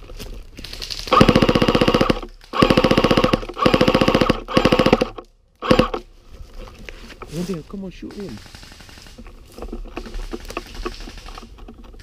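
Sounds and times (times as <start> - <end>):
airsoft gun full-auto firing: 1.1 - 6.0, 8.3 - 9.2
gearbox whining: 1.1 - 6.1.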